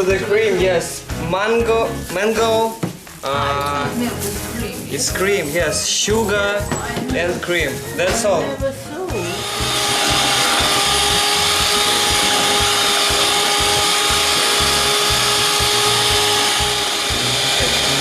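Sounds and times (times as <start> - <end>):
electric blender whining: 9.1 - 18.0.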